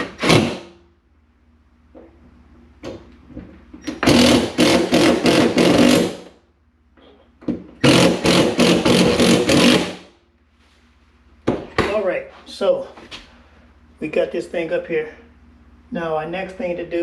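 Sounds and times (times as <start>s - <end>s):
power drill driving screws: 3.9s - 6.3s, 7.8s - 10.0s.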